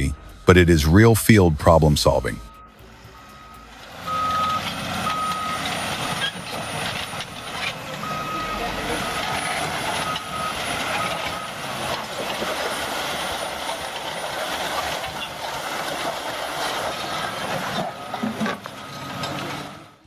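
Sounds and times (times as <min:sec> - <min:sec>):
reversing alarm beeping: 0:00.0 - 0:13.6, 0:17.7 - 0:19.7
diesel engine rumbling: 0:00.0 - 0:20.0.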